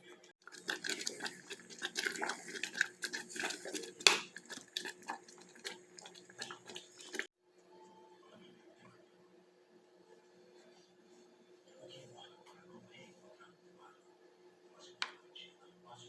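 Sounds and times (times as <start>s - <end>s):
utensils scraping a bowl: 0.6s - 7.3s.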